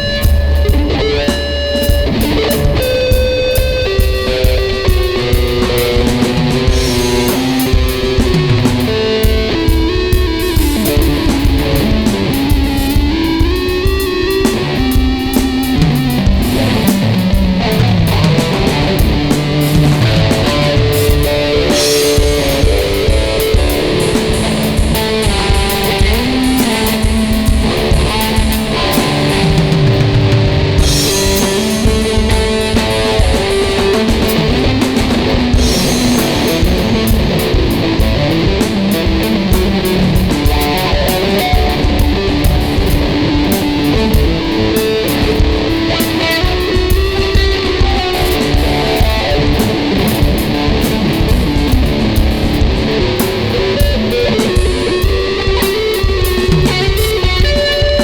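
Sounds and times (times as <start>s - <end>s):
electric guitar riffs: 0.0s - 58.0s
steady drum beat: 0.0s - 58.0s.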